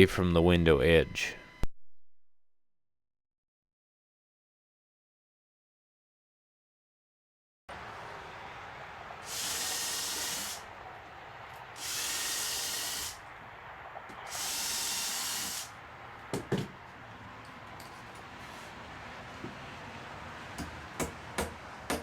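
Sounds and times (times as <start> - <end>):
hissing bursts: 7.8 - 15.9.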